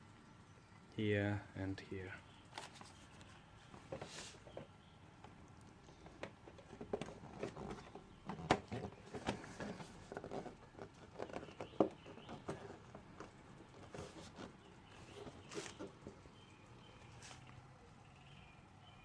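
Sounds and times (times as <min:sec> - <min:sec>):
plastic panels clicking and tapping: 0:03.8 - 0:14.0.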